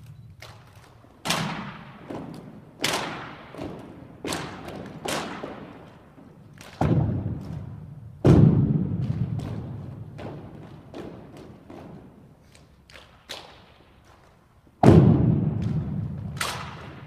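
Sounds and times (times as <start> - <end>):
rifles and boots striking with echo: 1.2 - 12.2, 14.8 - 17.0.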